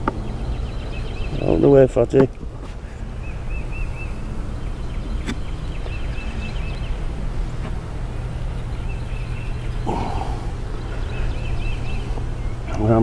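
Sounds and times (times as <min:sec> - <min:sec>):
honeybees humming: 0:00.0 - 0:13.0
small bird chirping: 0:00.0 - 0:13.0.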